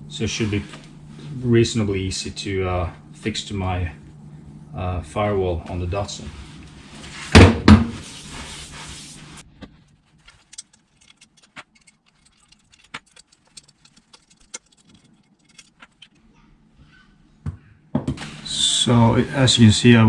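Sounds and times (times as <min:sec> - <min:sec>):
loud knocks on workbench: 0:07.3 - 0:08.0, 0:17.4 - 0:18.2
metal parts clicking and clinking: 0:10.2 - 0:16.2.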